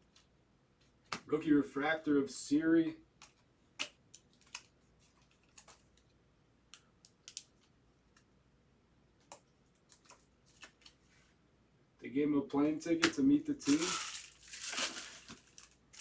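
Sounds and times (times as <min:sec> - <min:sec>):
trading cards clicking and flipping: 0:00.0 - 0:01.3, 0:03.2 - 0:06.1, 0:09.2 - 0:11.0.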